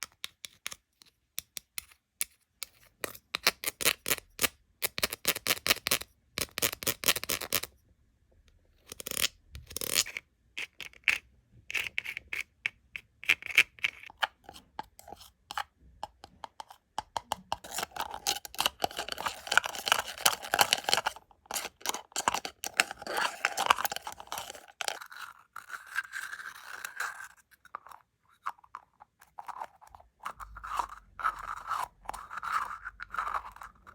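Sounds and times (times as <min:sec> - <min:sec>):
tapping and clicking on plastic toys: 0:15.6 - 0:17.7.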